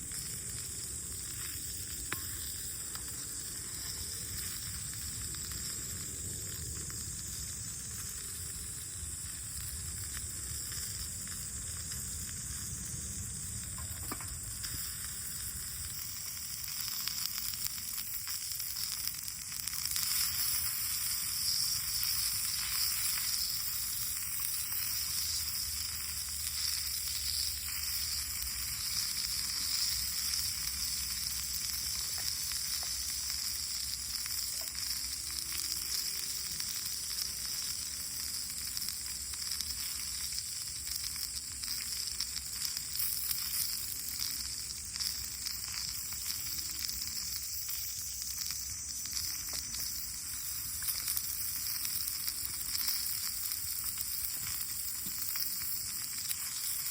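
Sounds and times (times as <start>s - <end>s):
food sizzling in a pan: 0.0s - 56.9s.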